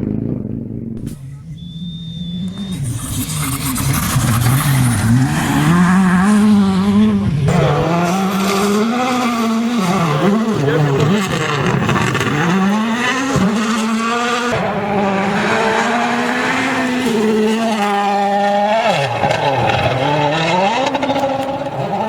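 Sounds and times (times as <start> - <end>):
rally car engine revving: 0.0 - 22.0.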